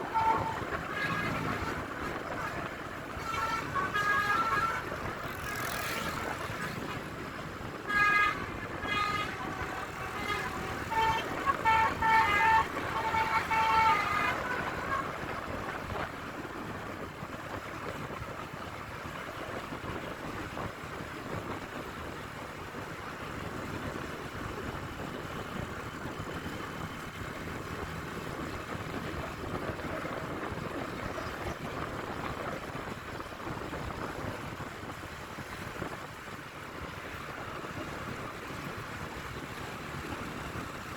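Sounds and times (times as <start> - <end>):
bus musical horn: 0.0 - 16.8
road traffic noise: 0.0 - 40.9
wind: 0.0 - 40.9.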